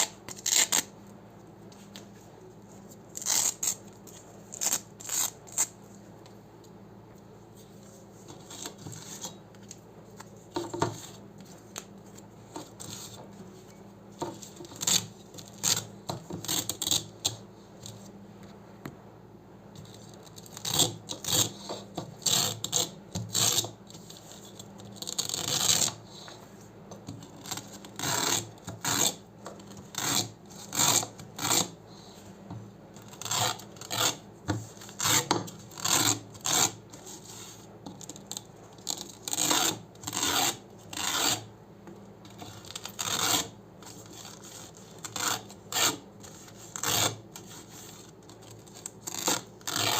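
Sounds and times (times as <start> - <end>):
velcro ripping: 0.0 - 0.9, 3.2 - 3.8, 4.5 - 5.8, 42.6 - 43.5, 48.7 - 49.9.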